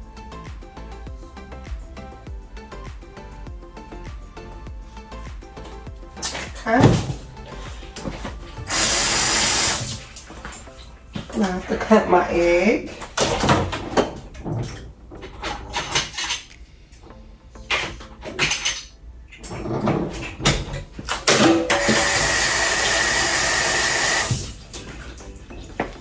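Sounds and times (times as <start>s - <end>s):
kitchen faucet running: 6.2s - 10.3s, 21.6s - 24.8s.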